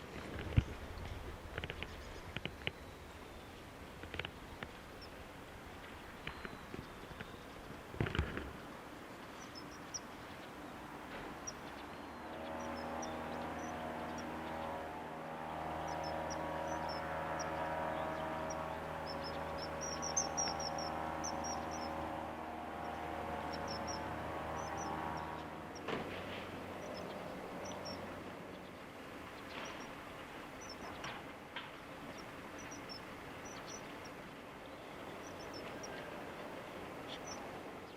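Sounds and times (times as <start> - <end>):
small birds chirping: 0.0 - 37.9
vehicle engine running: 9.3 - 37.9.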